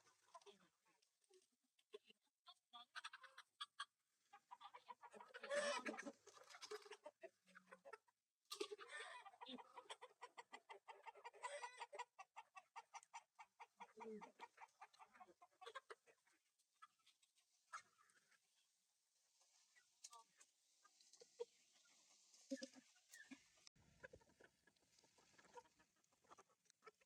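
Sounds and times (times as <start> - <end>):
chickens clucking: 0.0 - 1.0, 1.9 - 18.7, 19.3 - 27.0
chickens squawking: 2.8 - 8.0, 8.6 - 18.4.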